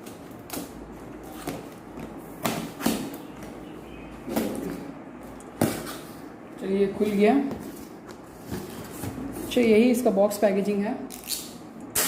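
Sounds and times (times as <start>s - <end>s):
packing tape ripping: 11.1s - 12.0s.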